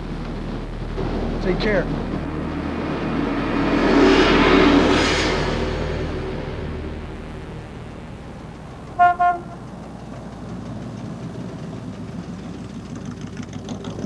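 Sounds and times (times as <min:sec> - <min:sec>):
steady low rumble: 0:00.0 - 0:13.3
car horn toots: 0:08.8 - 0:09.7.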